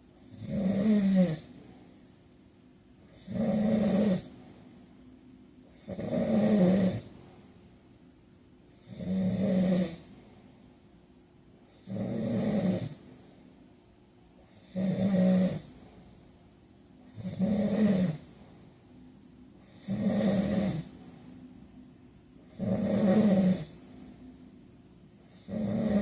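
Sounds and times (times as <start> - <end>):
quiet breathing: 0.0 - 8.0, 8.6 - 26.0
man snoring: 0.2 - 1.5, 3.0 - 4.4, 5.7 - 7.1, 8.8 - 10.1, 11.7 - 13.0, 14.5 - 15.7, 17.1 - 18.3, 19.6 - 20.9, 22.4 - 23.8, 25.3 - 26.0.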